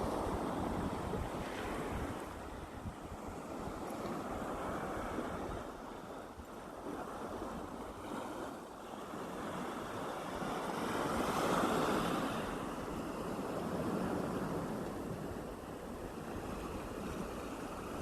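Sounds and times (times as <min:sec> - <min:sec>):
sea waves washing onto shore: 0:00.0 - 0:18.0.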